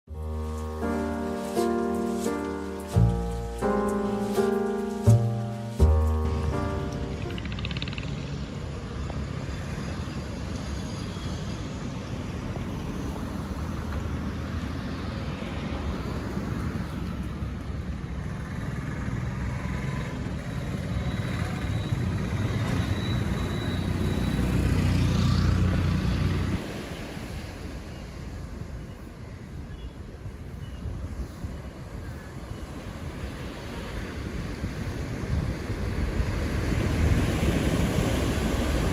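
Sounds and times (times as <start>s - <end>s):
sea surf washing onto beach: 32.7s - 38.9s.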